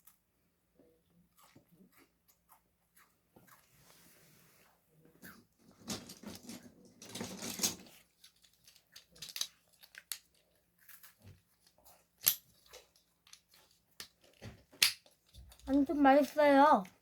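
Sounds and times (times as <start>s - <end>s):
crackers being chewed: 1.1s - 3.9s, 7.9s - 15.7s.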